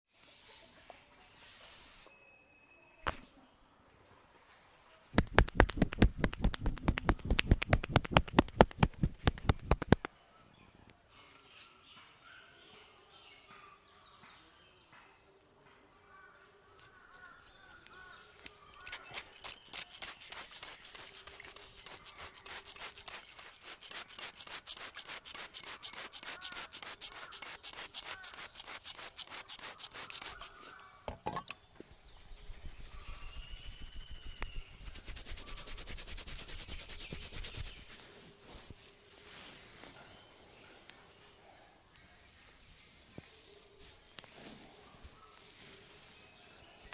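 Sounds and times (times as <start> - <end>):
faint bird chirps: 0.2 - 5.1, 16.0 - 46.9
light pats and rubs on head: 5.1 - 10.1, 18.8 - 30.9, 31.9 - 41.4, 42.0 - 46.9
fast hand slaps on head: 5.2 - 10.1.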